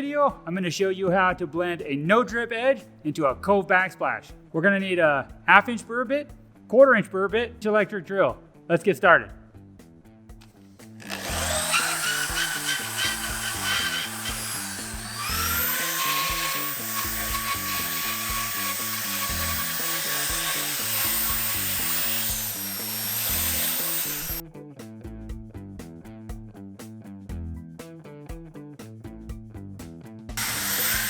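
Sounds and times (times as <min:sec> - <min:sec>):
background music: 0:00.0 - 0:31.0
drill bit grinding whine: 0:11.0 - 0:24.4, 0:30.4 - 0:31.0.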